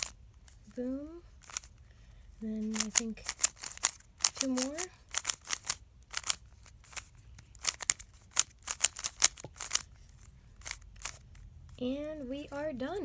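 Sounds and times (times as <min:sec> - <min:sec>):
plastic puzzle cube clicking: 0:00.0 - 0:00.8, 0:01.4 - 0:01.8, 0:02.6 - 0:11.3.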